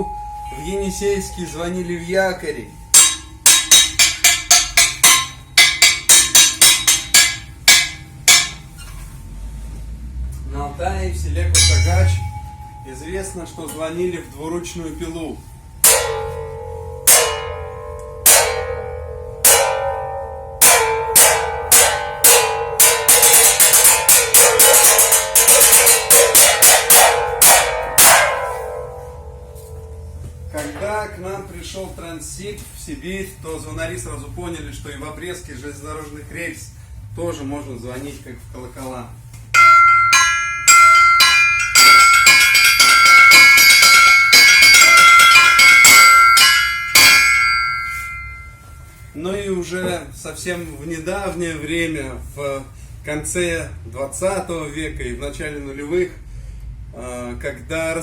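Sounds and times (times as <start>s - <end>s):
saw struck like a bell: 0.0s - 9.3s, 11.5s - 31.1s, 39.6s - 49.2s.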